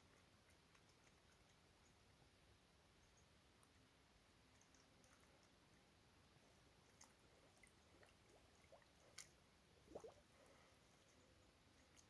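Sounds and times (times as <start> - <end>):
wet squelch: 6.5 - 12.0.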